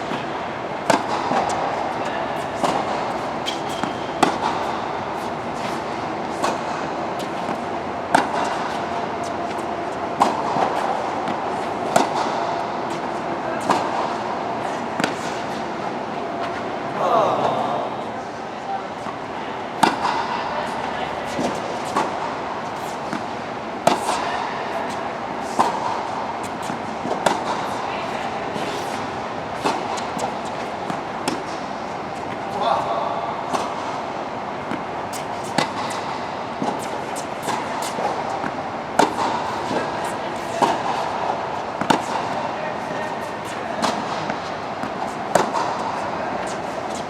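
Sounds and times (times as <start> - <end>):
background rush of noise: 0.0 - 47.0
sharp ball strikes: 2.4 - 4.8.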